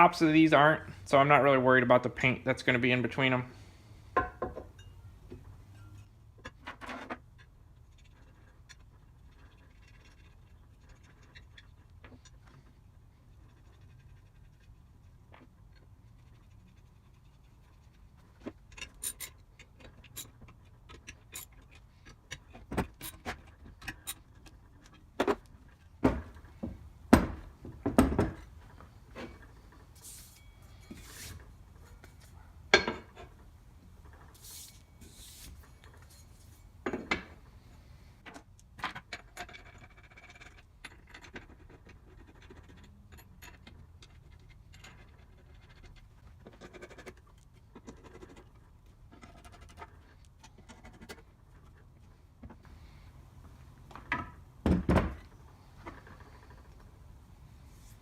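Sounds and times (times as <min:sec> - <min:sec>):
metal parts knocking and clinking: 0:18.4 - 0:25.8.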